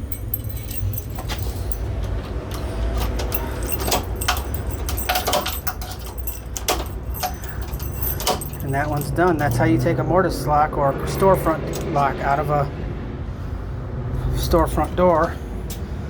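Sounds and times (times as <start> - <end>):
key turning in lock: 0.0 - 9.6
keys jangling: 0.0 - 10.0, 10.8 - 12.1.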